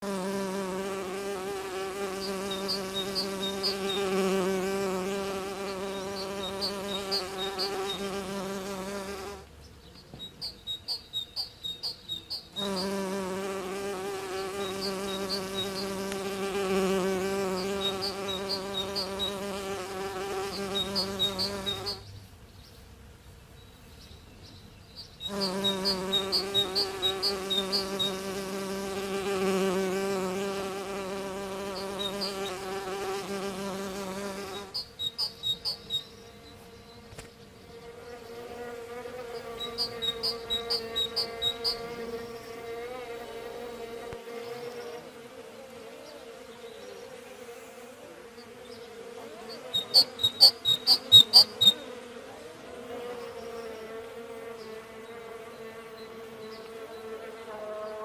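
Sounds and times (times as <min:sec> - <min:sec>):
bee buzzing: 0:00.0 - 0:22.1, 0:25.0 - 0:58.0
high chirping trills: 0:10.0 - 0:13.0, 0:34.6 - 0:37.0, 0:39.3 - 0:42.5, 0:49.8 - 0:51.8.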